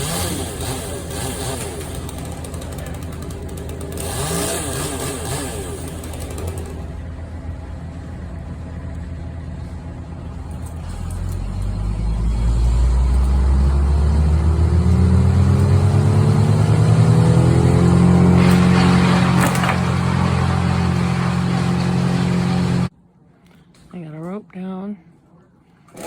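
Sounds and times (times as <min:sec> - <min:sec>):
large engine revving: 0:00.0 - 0:07.1, 0:10.7 - 0:22.9.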